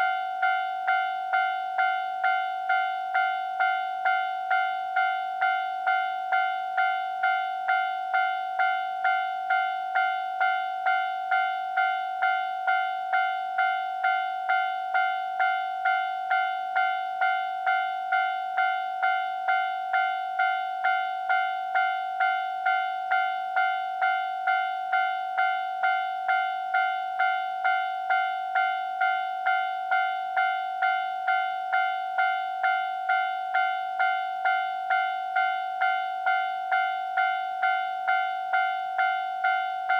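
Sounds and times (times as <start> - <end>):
level crossing bell clanging: 12.2 - 39.9.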